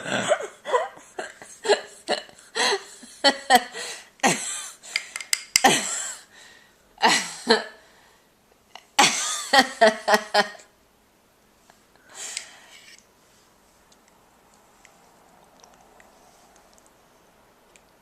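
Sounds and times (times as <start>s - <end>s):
breathing: 3.7s - 5.3s, 6.0s - 6.8s, 7.8s - 8.4s, 12.0s - 13.0s.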